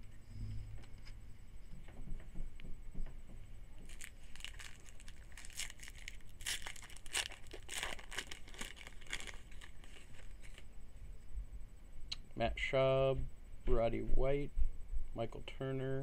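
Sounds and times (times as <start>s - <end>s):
wrapper tearing and crinkling: 3.9s - 10.7s.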